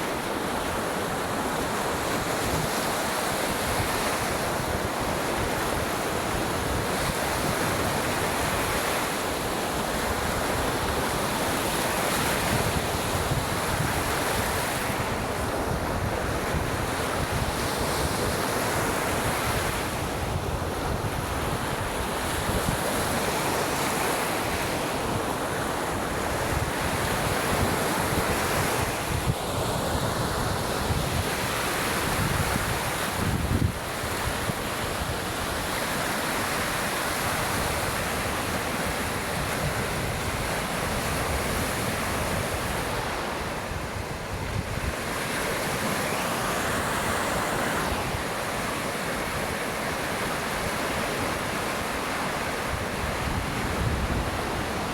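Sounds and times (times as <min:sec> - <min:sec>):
waves washing on shore: 0:00.0 - 0:54.9
wind buffeting microphone: 0:26.2 - 0:36.0, 0:37.2 - 0:46.0, 0:52.7 - 0:54.9.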